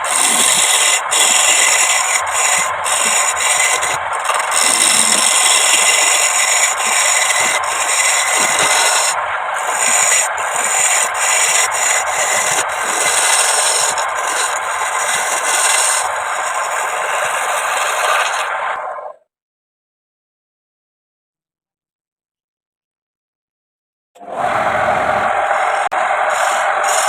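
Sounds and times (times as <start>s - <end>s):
dry rubbing scrape on wood: 0.0s - 18.5s, 26.2s - 27.0s.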